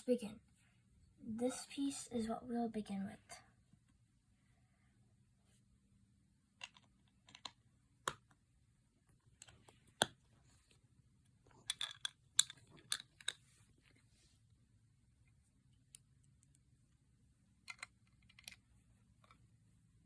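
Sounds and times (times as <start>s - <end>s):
plastic bricks clicking together: 6.6s - 8.2s, 11.6s - 13.4s, 17.6s - 18.6s.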